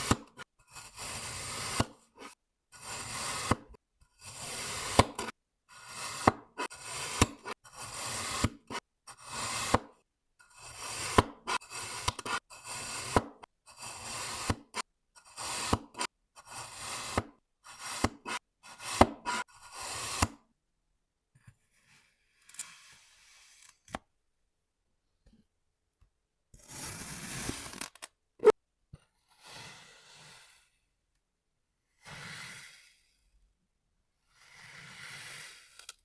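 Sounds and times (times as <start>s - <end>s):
knife cutting sand: 0.0s - 20.4s.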